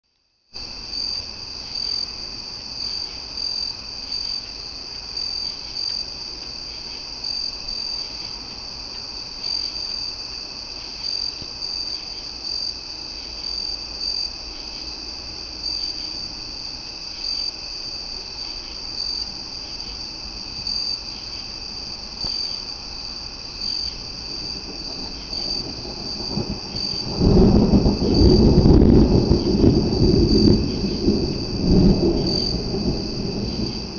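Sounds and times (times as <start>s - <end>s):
crickets chirping: 0.1s - 33.9s
thunder rumbling: 23.6s - 33.9s.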